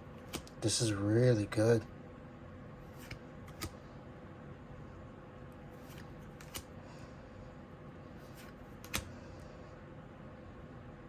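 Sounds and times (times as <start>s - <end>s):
faint steady hum: 0.0s - 11.0s
cards flipping: 0.2s - 0.6s, 2.9s - 3.8s, 5.8s - 6.7s, 8.2s - 9.1s.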